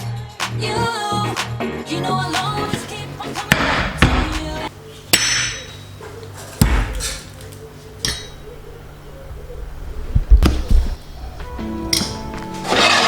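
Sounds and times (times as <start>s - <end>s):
kitchen items knocking: 2.3s - 9.0s, 11.8s - 13.0s
low steady hum: 2.3s - 13.0s.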